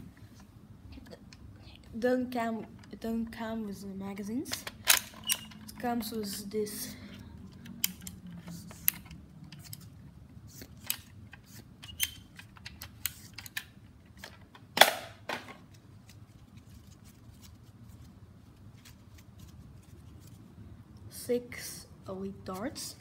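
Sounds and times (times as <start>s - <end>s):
sharp plastic clack: 11.8s - 15.6s.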